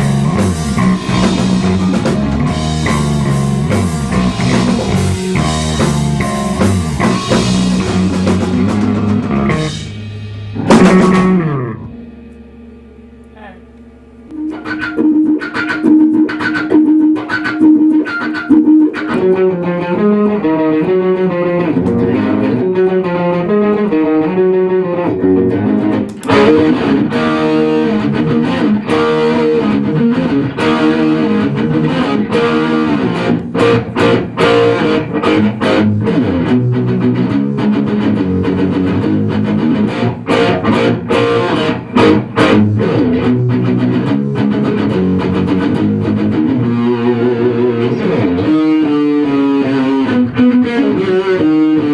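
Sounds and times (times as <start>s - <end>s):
bass line: 0.0s - 16.8s, 20.0s - 51.9s
guitar band music: 0.0s - 51.9s
sharp drum hits: 6.7s - 12.6s.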